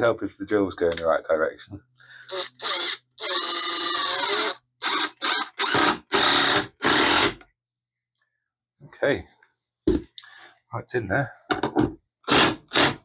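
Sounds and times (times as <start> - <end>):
impact driver driving screw into wood: 2.3 - 7.4, 12.3 - 13.0.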